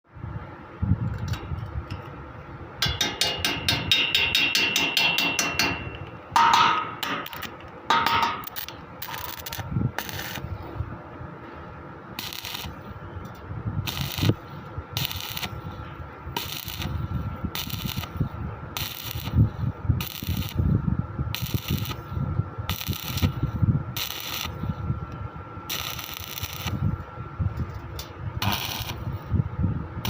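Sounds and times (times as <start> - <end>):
ringing metal clanks: 2.8 - 8.6.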